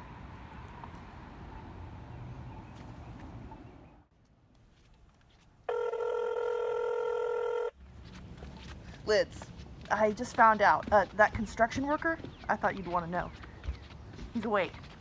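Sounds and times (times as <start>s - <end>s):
phone ringtone: 5.7s - 7.8s.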